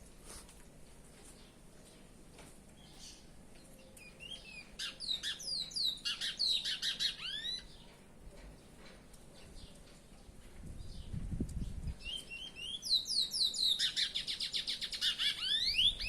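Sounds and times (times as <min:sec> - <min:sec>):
finch whistled song: 0:12.0 - 0:16.0.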